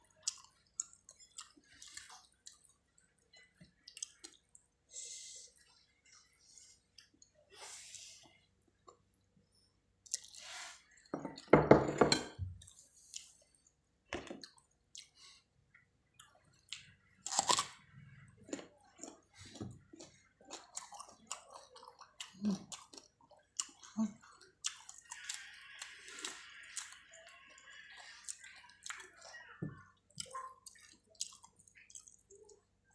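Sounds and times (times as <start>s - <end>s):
wet chewing mouth sounds: 18.4s - 27.2s, 30.1s - 32.6s.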